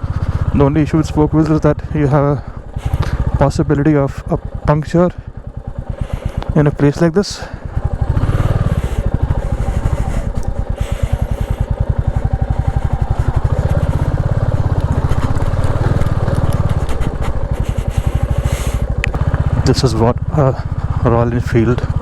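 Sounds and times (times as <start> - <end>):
motorcycle engine pulsing at low speed: 0.0 - 22.0.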